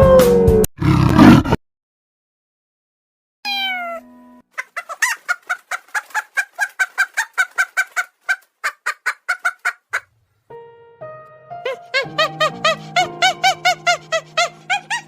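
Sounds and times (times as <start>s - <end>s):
chicken clucking: 4.6s - 10.1s, 11.7s - 15.0s.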